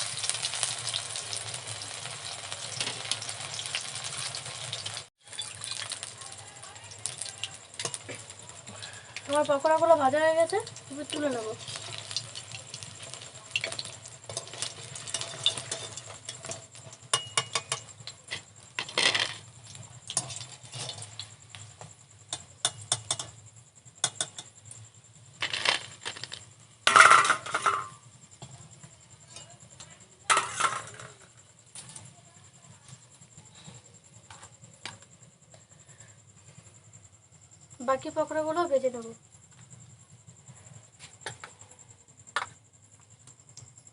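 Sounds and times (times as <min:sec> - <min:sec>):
metal utensil scraping a pan: 0:02.0 - 0:06.0, 0:07.1 - 0:08.3, 0:11.1 - 0:21.3, 0:25.4 - 0:28.0, 0:30.3 - 0:32.0.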